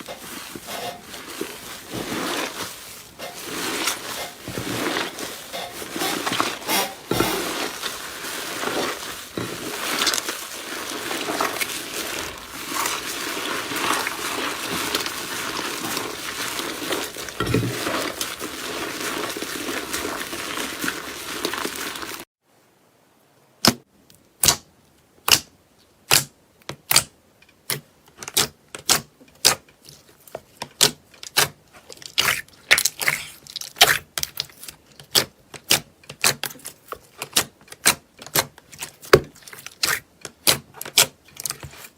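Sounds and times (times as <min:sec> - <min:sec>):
slime squished by hand: 0:00.0 - 0:22.2.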